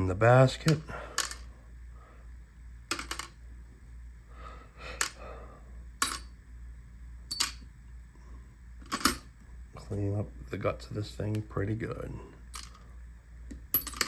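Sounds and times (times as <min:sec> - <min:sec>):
metal parts clinking into basket: 0:02.9 - 0:03.3, 0:07.3 - 0:07.6, 0:08.9 - 0:09.3, 0:12.5 - 0:12.8, 0:13.8 - 0:14.0.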